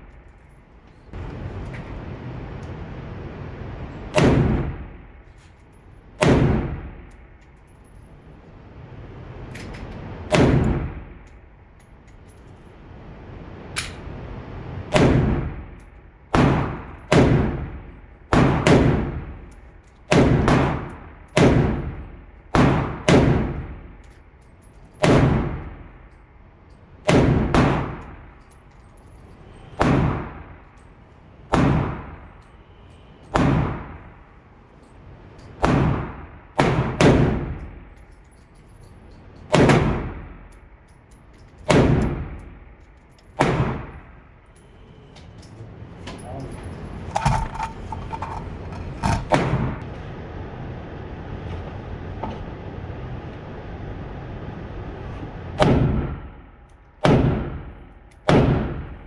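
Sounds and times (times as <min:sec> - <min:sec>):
rifle shots echoing: 0:04.1 - 0:05.0.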